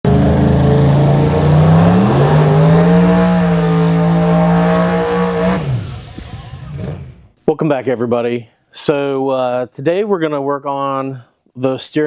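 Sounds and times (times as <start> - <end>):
car engine revving: 0.0 - 7.4.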